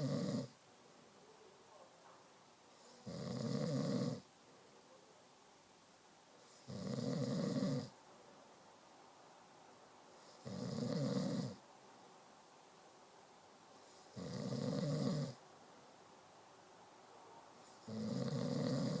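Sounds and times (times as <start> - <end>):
person snoring: 0.0 - 0.5, 3.0 - 4.2, 6.7 - 7.9, 10.4 - 11.6, 14.1 - 15.4, 17.8 - 19.0
quiet breathing: 0.0 - 5.2, 6.3 - 16.0, 16.6 - 19.0.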